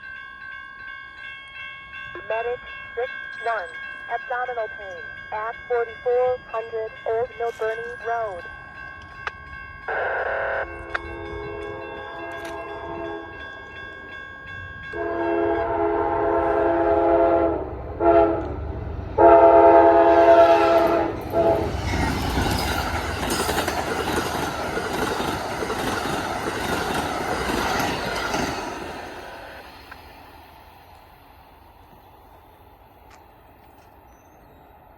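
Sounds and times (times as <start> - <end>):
train horn blasts: 9.9 - 13.4, 14.9 - 18.6, 19.2 - 21.9
wheels clacking on rail joints: 21.2 - 30.2.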